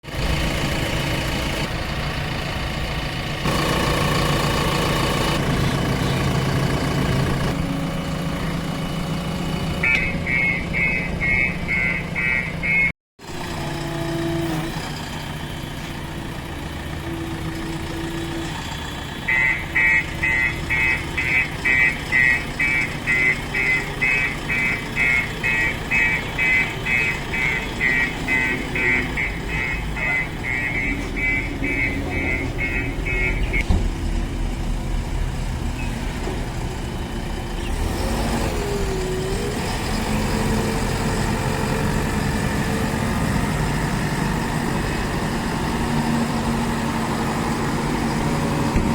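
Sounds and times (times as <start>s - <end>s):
diesel engine running: 0.0s - 48.9s
reversing alarm beeping: 9.8s - 12.9s, 19.3s - 33.7s.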